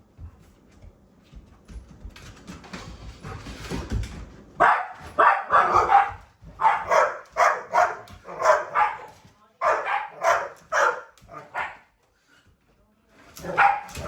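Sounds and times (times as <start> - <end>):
dog barking excitedly: 4.6 - 11.9, 13.4 - 14.0.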